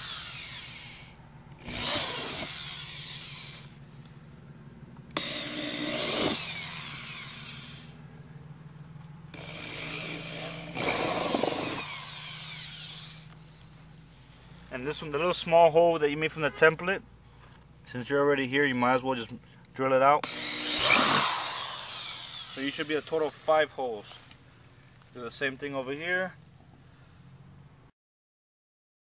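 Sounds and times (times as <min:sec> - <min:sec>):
power drill boring plastic: 0:00.0 - 0:03.8, 0:05.1 - 0:08.0, 0:09.3 - 0:13.8, 0:20.2 - 0:24.4.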